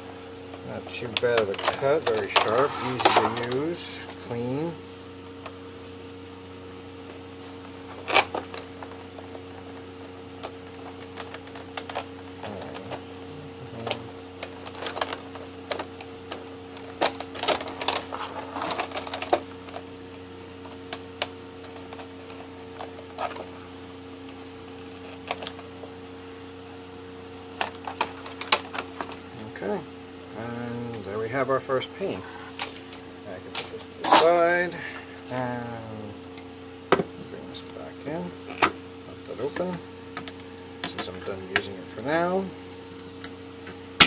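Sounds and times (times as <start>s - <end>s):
knife cutting plastic packaging: 1.0s - 3.8s.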